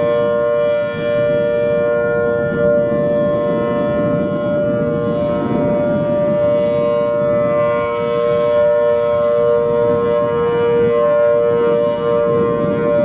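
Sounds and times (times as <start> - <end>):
warning siren steady two-note chord: 0.0 - 13.0.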